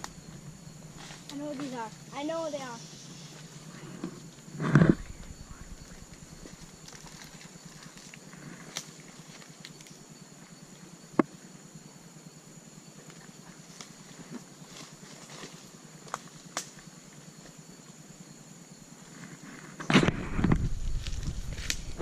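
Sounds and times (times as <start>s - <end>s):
insects buzzing: 0.0s - 22.0s
loud thump: 4.6s - 5.6s.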